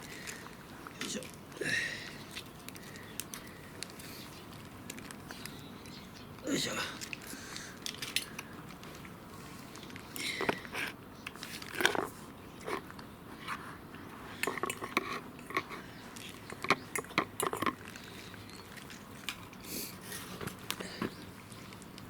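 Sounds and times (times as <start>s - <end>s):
cat chewing crunchy food: 14.3s - 20.8s.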